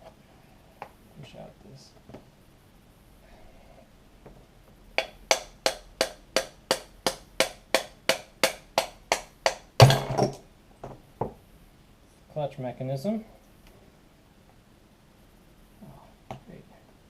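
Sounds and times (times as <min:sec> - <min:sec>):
hammer tapping metal: 0:05.0 - 0:10.4
loud knock with rattle: 0:09.5 - 0:11.4.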